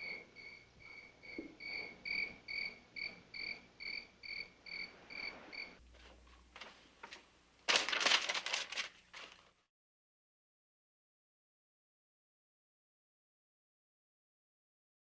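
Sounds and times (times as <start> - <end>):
cricket chirping: 0.0 - 5.8.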